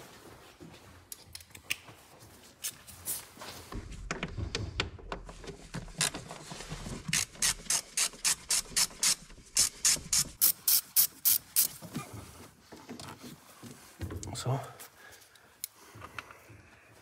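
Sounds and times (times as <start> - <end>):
hand ratchet clicking: 7.1 - 11.7.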